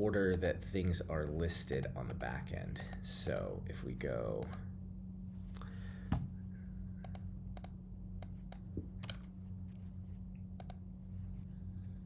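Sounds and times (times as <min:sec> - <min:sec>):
steady low hum: 0:00.0 - 0:12.0
keyboard and mouse clicks: 0:01.7 - 0:03.5, 0:04.4 - 0:04.6, 0:07.0 - 0:09.3, 0:10.6 - 0:10.8.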